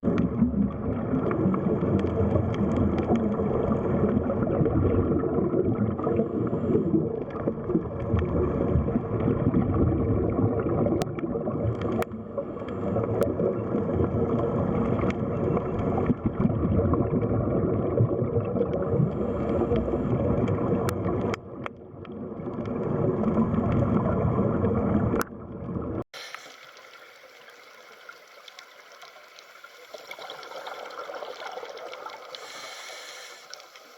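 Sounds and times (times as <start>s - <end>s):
underwater rushing gurgling water: 0.0s - 33.9s
thin hiss: 26.2s - 31.1s, 32.2s - 33.9s
faint ticks: 31.8s - 33.9s.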